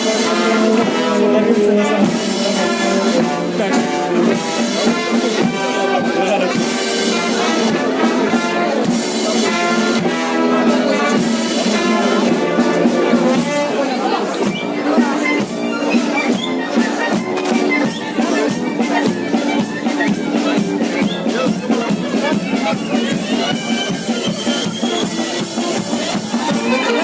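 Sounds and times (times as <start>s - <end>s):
brass band playing: 0.0s - 27.0s.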